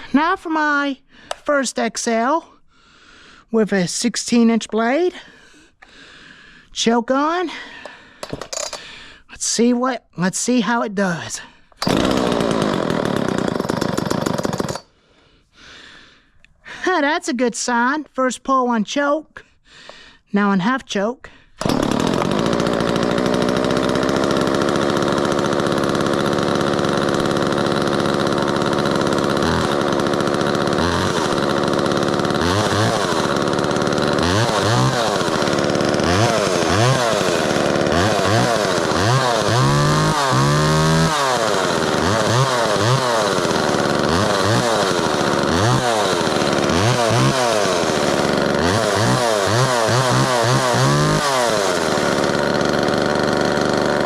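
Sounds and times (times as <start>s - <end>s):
chainsaw revving: 11.8s - 14.9s, 21.6s - 54.0s.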